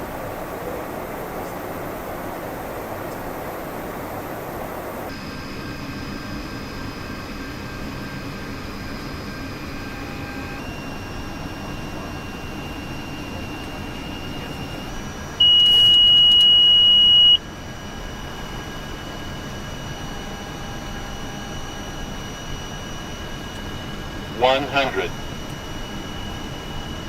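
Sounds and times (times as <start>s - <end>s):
aircraft interior noise: 0.0s - 27.0s
faint electronic tones: 24.4s - 26.8s.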